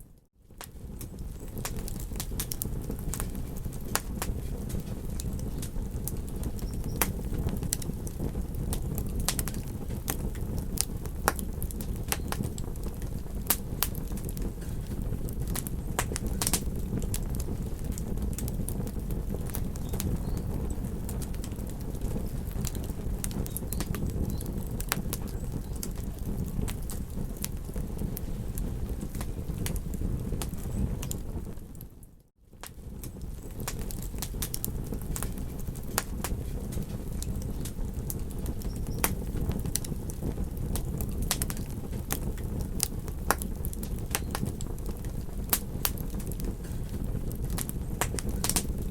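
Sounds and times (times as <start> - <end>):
campfire crackling and popping: 0.0 - 48.9.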